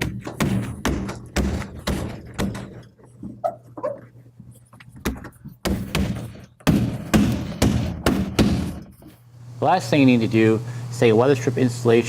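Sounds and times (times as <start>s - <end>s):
dull knocks and rubbing: 0.0s - 9.2s.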